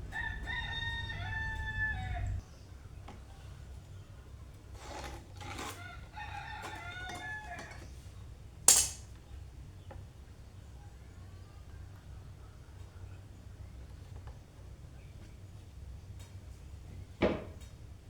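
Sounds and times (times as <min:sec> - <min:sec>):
rooster crowing: 0:00.0 - 0:02.4, 0:05.6 - 0:07.9.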